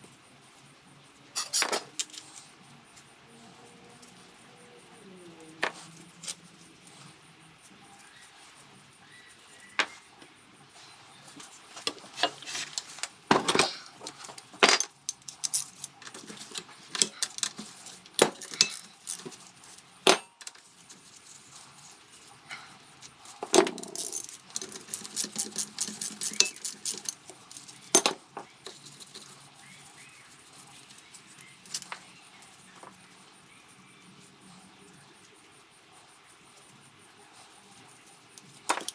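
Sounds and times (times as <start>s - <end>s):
metal tools clinking and clattering: 1.4s - 2.4s, 11.8s - 19.4s, 20.1s - 20.6s, 23.3s - 29.4s, 38.6s - 38.9s.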